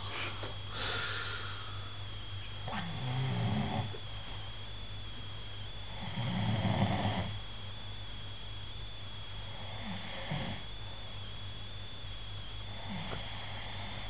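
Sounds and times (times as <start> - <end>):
steady low hum: 0.0 - 14.0
thin high whine: 0.0 - 14.0
person snoring: 2.7 - 4.0, 12.7 - 14.0.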